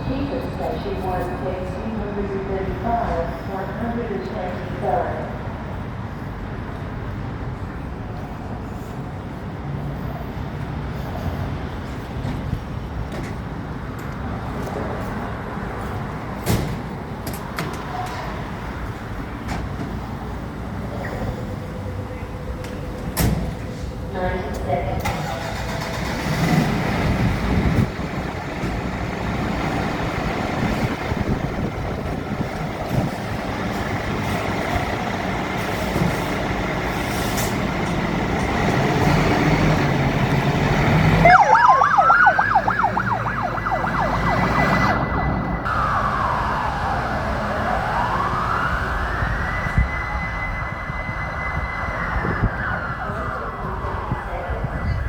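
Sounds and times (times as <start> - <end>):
fire engine driving: 0.0 - 55.0
siren wailing: 39.9 - 55.0.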